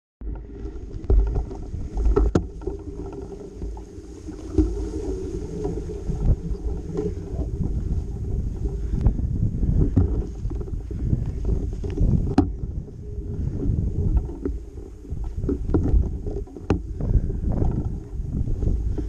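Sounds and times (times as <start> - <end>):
wind on microphone: 0.2 - 19.0.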